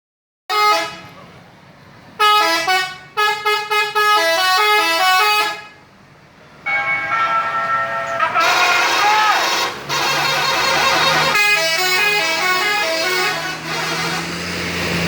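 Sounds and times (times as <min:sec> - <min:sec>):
bus musical horn tune: 0:00.5 - 0:01.1, 0:02.2 - 0:05.8, 0:06.7 - 0:14.4
horn steady chord: 0:06.7 - 0:14.0.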